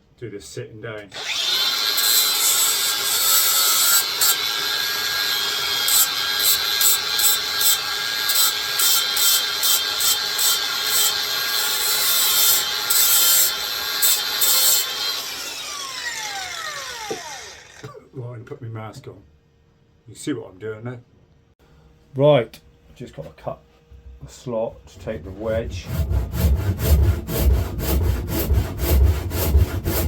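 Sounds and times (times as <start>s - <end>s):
power tool grinding wood: 1.2s - 18.0s, 25.0s - 30.0s.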